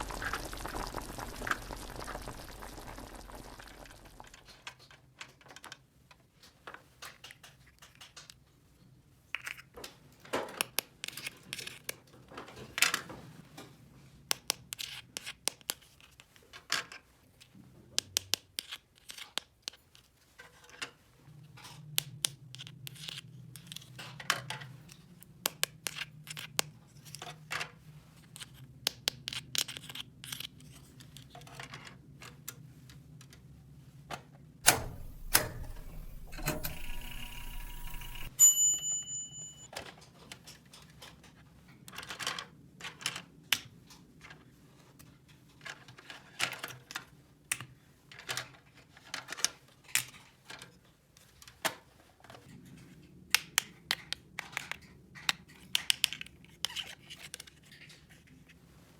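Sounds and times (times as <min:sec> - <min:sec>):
loud noisy burst: 0:00.0 - 0:04.4
short steady high tone: 0:34.7 - 0:39.7.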